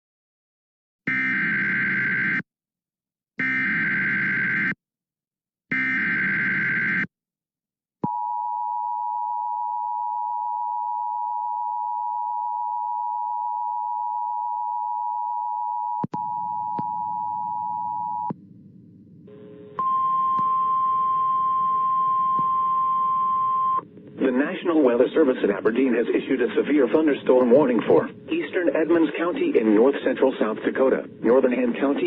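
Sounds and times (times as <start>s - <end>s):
steady high tone over static: 23.9s - 32.0s.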